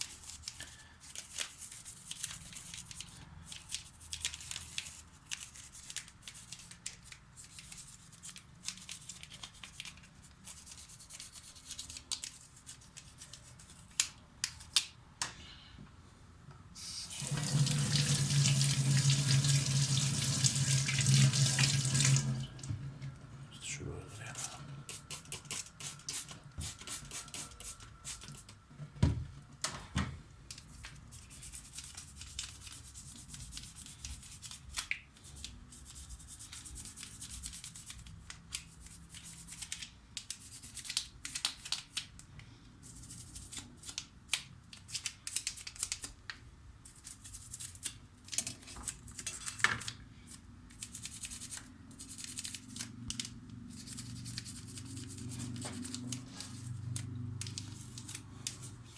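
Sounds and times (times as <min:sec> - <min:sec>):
toothbrush scrubbing: 0:53.7 - 0:57.0.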